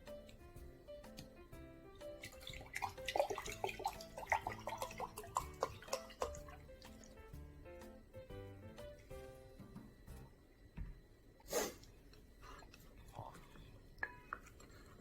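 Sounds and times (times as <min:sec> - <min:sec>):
soft background music: 0:00.0 - 0:15.0
wet chewing and slurping: 0:12.4 - 0:15.0.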